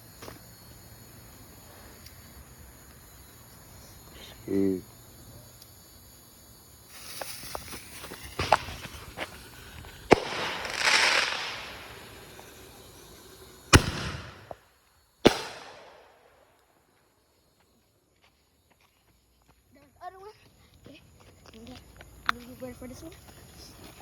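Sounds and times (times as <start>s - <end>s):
fireworks hissing and crackling: 0.0s - 16.7s
firework bangs: 6.9s - 16.4s.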